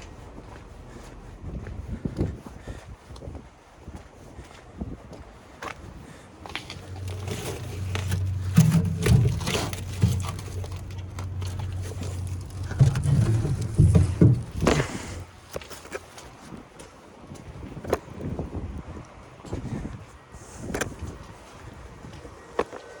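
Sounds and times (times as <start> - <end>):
knocks and scrapes: 6.5 - 16.1
low motor hum: 6.6 - 15.5.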